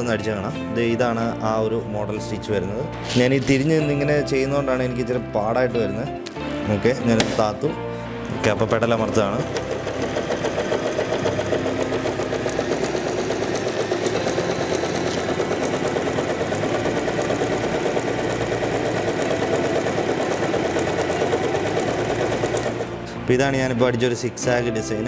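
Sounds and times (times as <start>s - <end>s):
sewing machine running: 9.0s - 23.1s.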